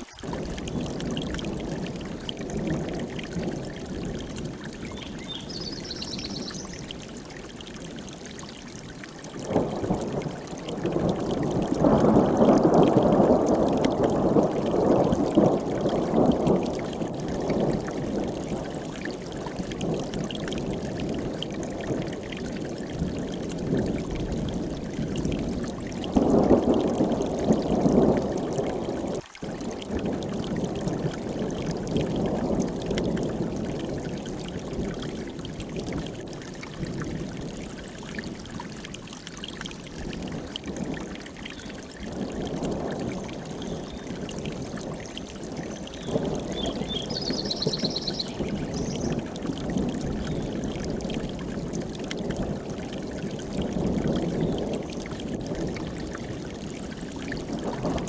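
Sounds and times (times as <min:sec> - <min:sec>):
mountain stream rushing: 0:00.0 - 0:15.0, 0:32.1 - 0:54.2
bird chirping: 0:04.9 - 0:06.8, 0:46.0 - 0:49.2.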